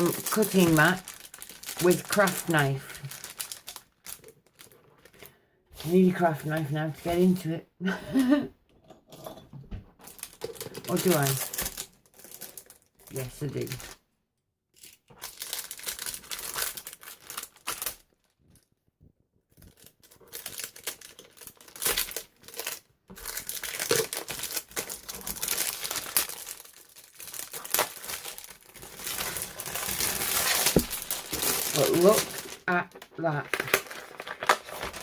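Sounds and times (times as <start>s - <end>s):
plastic and paper crinkling: 0.0s - 7.5s, 10.0s - 14.0s, 15.1s - 18.6s, 19.5s - 35.0s
packaging being cut and torn: 19.8s - 35.0s.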